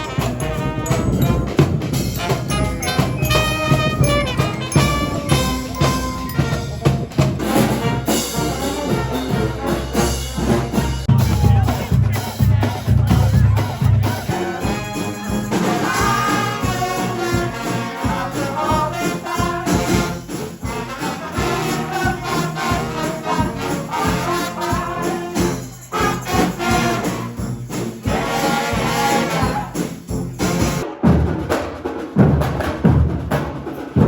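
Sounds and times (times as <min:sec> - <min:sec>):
horns playing a tune: 0:00.0 - 0:30.9
steady drum beat: 0:00.0 - 0:34.0.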